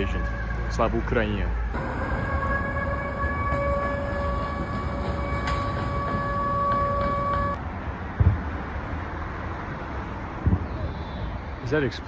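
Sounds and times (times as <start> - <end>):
air raid siren tone: 0.0 - 7.6.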